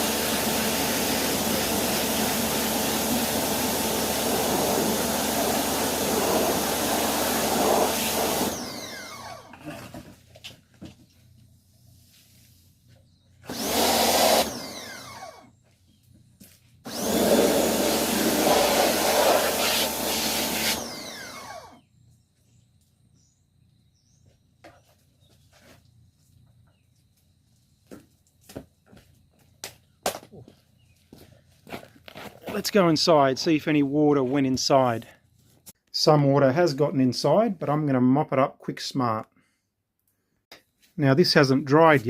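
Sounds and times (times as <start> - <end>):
pressure cleaner spraying: 0.0 - 8.8, 13.5 - 14.9, 16.9 - 21.0.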